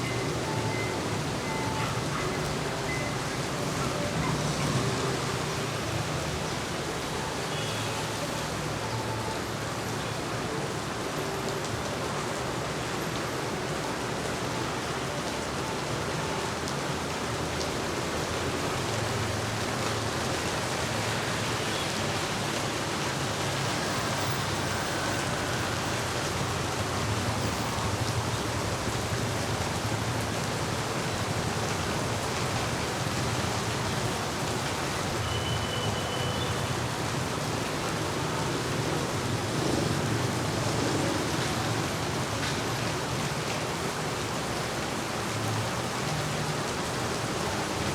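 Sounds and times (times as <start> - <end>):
heavy rain hissing: 17.3 - 47.9.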